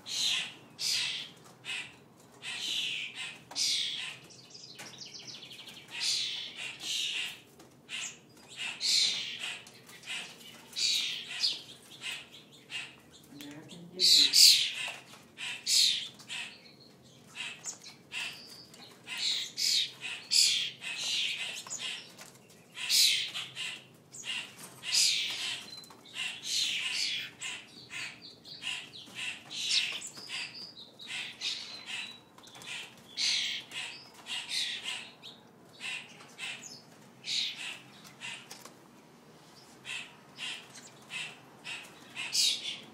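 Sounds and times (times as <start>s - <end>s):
songbirds squawking: 0.0s - 42.9s.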